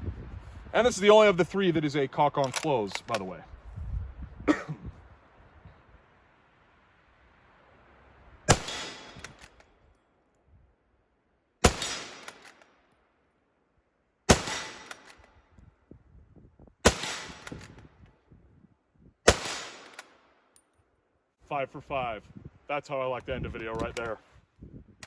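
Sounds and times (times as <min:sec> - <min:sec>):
rifle bolt clicks: 0:02.4 - 0:03.3, 0:08.5 - 0:09.7, 0:11.7 - 0:12.7, 0:14.3 - 0:15.4, 0:16.9 - 0:17.9, 0:19.3 - 0:20.8, 0:23.7 - 0:24.1
rifle shots echoing: 0:08.5 - 0:09.6, 0:11.6 - 0:12.8, 0:14.3 - 0:15.3, 0:16.8 - 0:17.8, 0:19.3 - 0:20.4.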